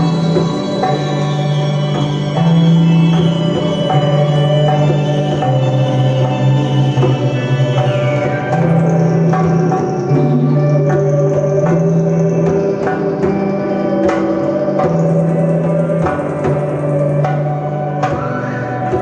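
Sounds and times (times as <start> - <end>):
bass line: 0.0 - 19.0
sharp percussion hits: 0.0 - 19.0
steady drone: 0.0 - 19.0.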